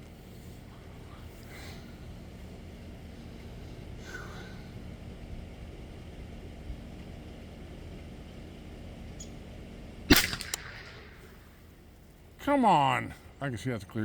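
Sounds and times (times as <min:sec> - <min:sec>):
low background noise: 0:00.0 - 0:14.0
rifle shot: 0:10.1 - 0:11.5.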